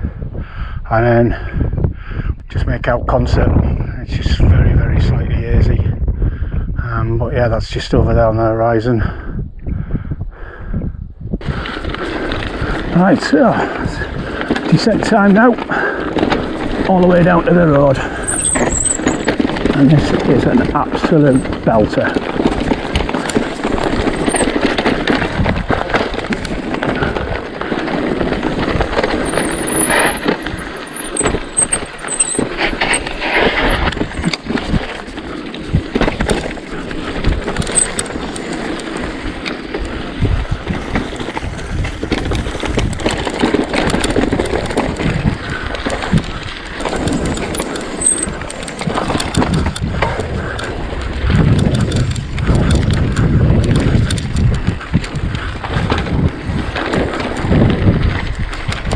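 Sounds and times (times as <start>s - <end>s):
bike tyres rumbling over stones: 11.4s - 58.9s
chain and frame rattling: 16.4s - 35.1s, 36.2s - 39.2s, 46.8s - 49.6s.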